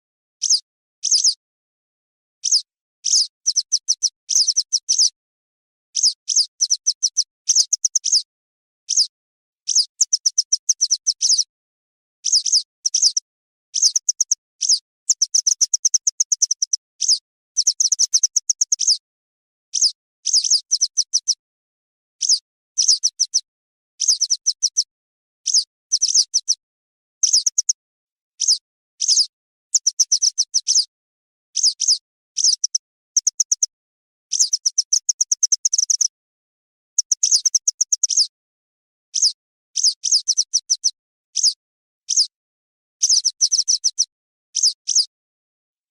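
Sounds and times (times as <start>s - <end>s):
wagtail chirping: 6.0s - 8.2s, 9.7s - 11.4s, 12.2s - 13.2s, 13.8s - 19.0s, 27.2s - 27.8s, 31.6s - 33.7s, 34.3s - 36.1s, 37.0s - 38.2s.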